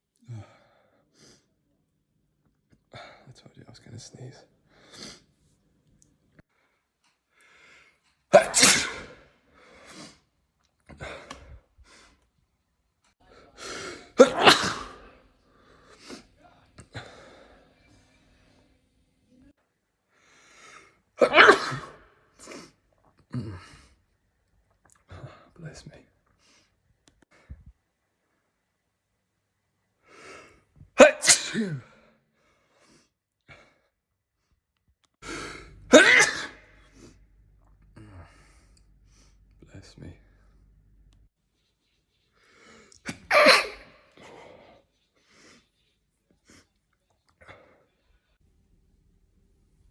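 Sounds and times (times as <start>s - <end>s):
person sneezing: 8.3s - 9.2s, 13.6s - 15.1s, 21.2s - 22.7s, 31.0s - 32.0s, 35.3s - 37.1s, 43.0s - 44.7s
person breathing: 44.2s - 45.8s.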